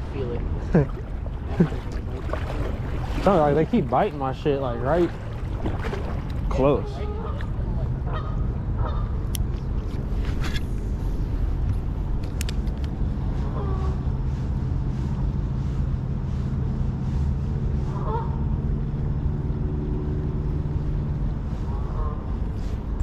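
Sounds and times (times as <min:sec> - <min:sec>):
low outdoor rumble: 0:00.0 - 0:23.0
steady hum: 0:00.0 - 0:23.0
distant geese honking: 0:01.7 - 0:09.3, 0:13.4 - 0:14.1, 0:17.8 - 0:19.0, 0:21.5 - 0:22.7.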